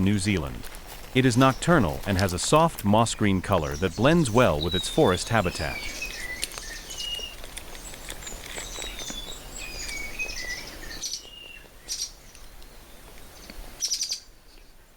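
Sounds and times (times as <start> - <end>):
steady background hiss: 0.0 - 6.2
birds chirping: 0.0 - 14.9.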